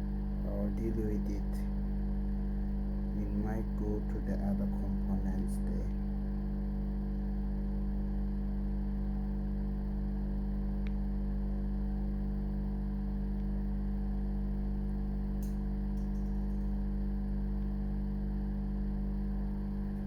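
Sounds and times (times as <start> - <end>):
electrical hum: 0.0 - 20.0
small click: 10.8 - 11.0, 15.4 - 16.7.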